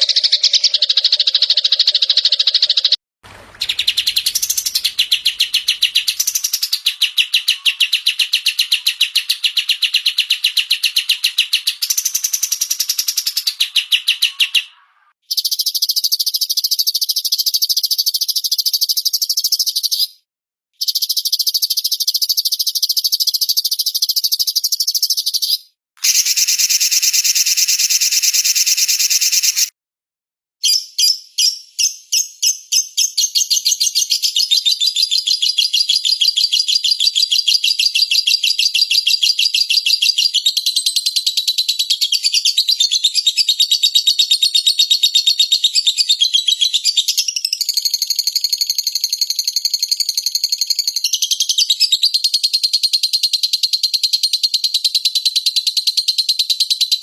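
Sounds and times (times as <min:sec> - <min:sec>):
songbirds trilling and chattering: 0:03.4 - 0:09.4.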